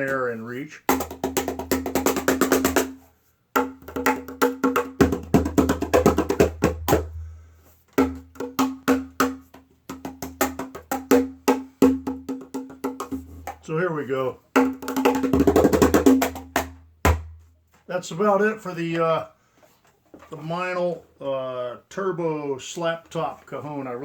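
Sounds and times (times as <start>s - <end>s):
cajon played by hand: 0.9s - 3.0s, 3.6s - 7.2s, 8.0s - 13.6s, 14.6s - 17.5s.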